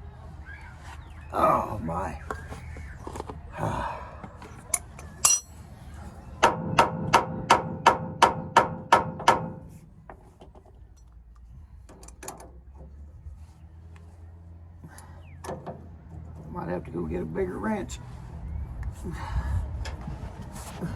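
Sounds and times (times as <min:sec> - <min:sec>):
hammer striking steel: 0:05.2 - 0:05.5
metal knocks: 0:06.4 - 0:09.8.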